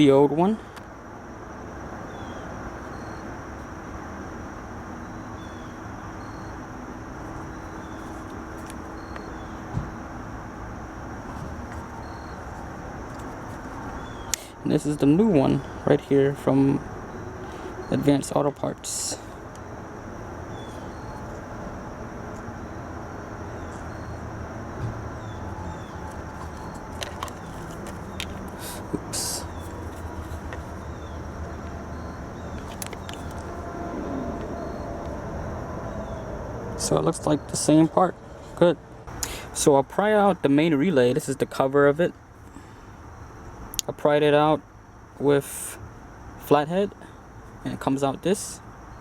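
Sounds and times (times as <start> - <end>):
faint steady high whine: 0.0 - 49.0
low background noise: 0.0 - 49.0
low even rumble: 28.0 - 39.0.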